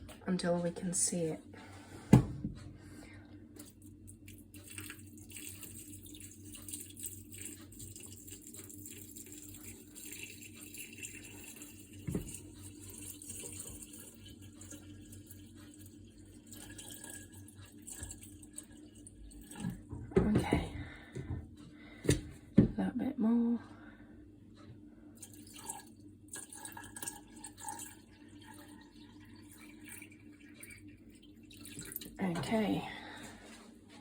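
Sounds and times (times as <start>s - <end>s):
water pouring into reservoir: 4.3s - 19.9s, 25.2s - 32.3s.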